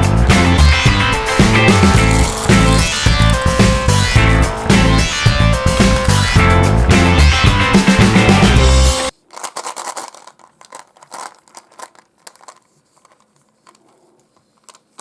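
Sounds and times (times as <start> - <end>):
music: 0.0 - 9.1
wrapper crinkling and tearing: 2.0 - 3.4, 9.1 - 15.0.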